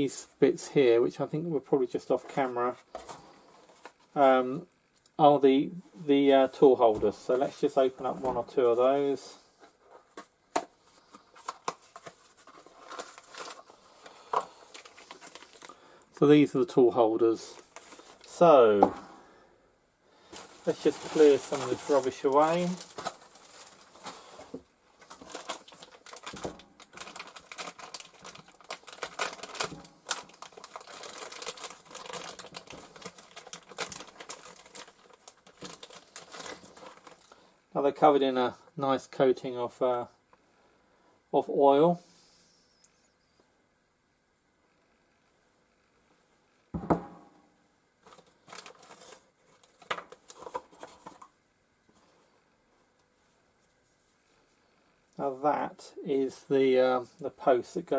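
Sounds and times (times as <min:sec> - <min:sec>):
wrapping rustling and crinkling: 0:06.4 - 0:16.0, 0:17.3 - 0:18.6, 0:20.2 - 0:37.4, 0:48.0 - 0:52.2
metal part knocking on bench: 0:46.8 - 0:47.3.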